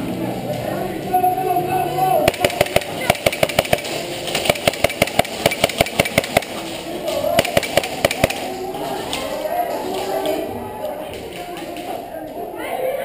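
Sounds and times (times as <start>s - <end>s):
airsoft gun shots: 2.3s - 6.6s, 7.3s - 8.5s.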